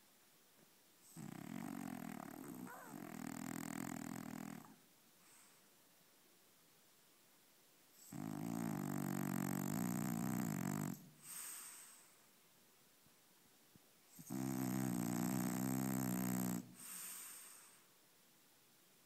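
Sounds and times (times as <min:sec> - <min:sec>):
dog snoring: 0:01.0 - 0:04.8, 0:08.0 - 0:11.9, 0:14.1 - 0:17.7.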